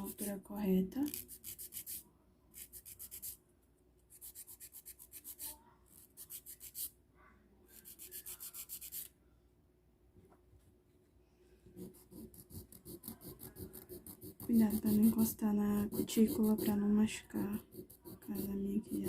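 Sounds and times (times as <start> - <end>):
nail file rasping on fingernail: 0.0 - 0.4, 1.1 - 2.0, 2.6 - 3.4, 4.1 - 6.9, 7.7 - 9.1, 11.8 - 16.8, 17.4 - 19.0.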